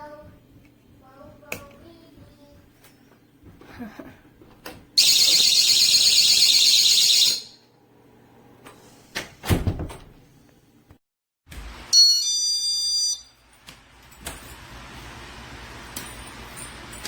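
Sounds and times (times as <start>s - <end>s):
warbling alarm siren: 5.0s - 7.6s.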